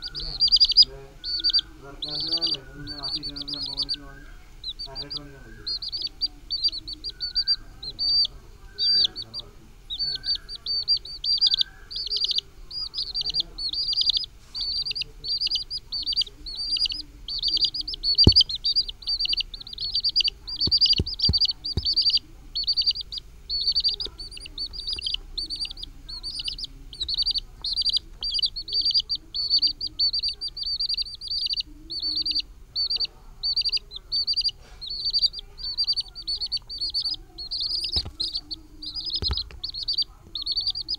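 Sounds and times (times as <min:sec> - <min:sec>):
chicks peeping: 0:00.0 - 0:40.9
short thumps: 0:18.2 - 0:18.7, 0:20.6 - 0:22.1, 0:37.8 - 0:38.5, 0:39.1 - 0:39.6.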